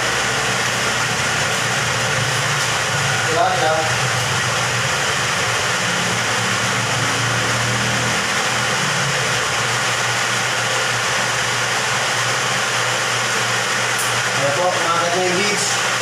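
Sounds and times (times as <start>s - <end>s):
machine hum and hiss: 0.0s - 16.0s.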